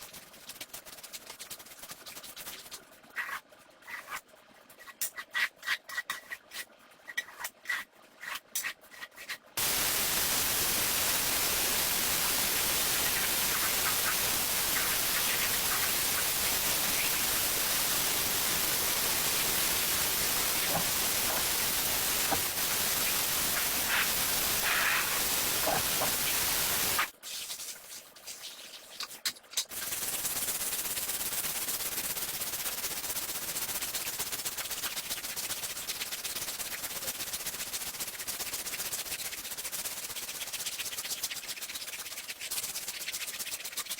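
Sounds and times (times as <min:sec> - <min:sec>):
sprayer hissing: 0:09.6 - 0:27.1.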